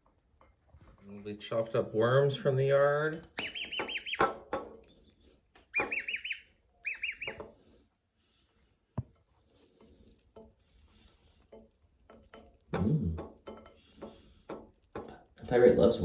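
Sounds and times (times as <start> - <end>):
gosling peeping: 3.3 - 4.5, 5.6 - 7.6.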